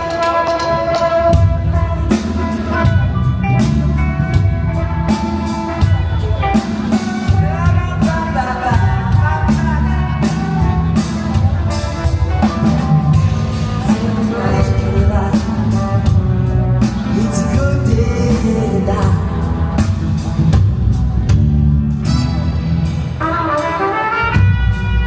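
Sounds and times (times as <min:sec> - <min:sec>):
bass guitar: 0:00.0 - 0:25.0
drum kit: 0:00.0 - 0:25.0
electric guitar: 0:00.0 - 0:25.0
person singing: 0:06.9 - 0:11.4, 0:12.7 - 0:20.2.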